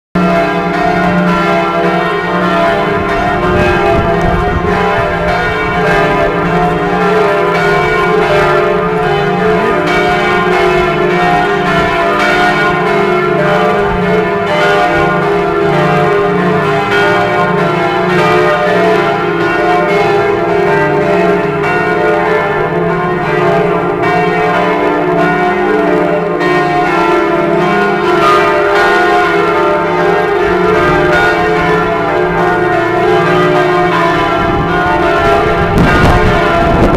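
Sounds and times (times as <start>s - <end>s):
cathedral bells ringing: 0.2s - 36.9s.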